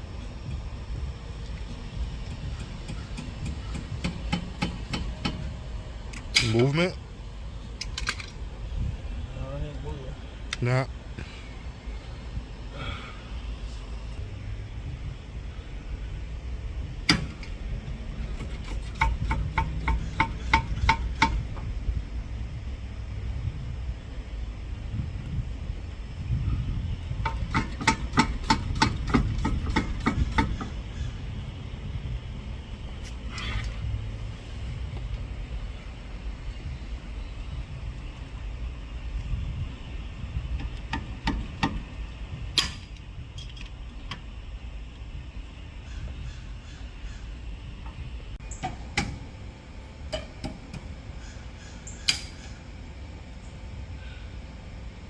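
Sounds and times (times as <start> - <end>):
hammer striking metal: 2.6 - 5.5
low rumble: 6.9 - 18.3
sharp knocks and clicks: 18.4 - 21.7, 27.2 - 30.8, 40.6 - 41.8.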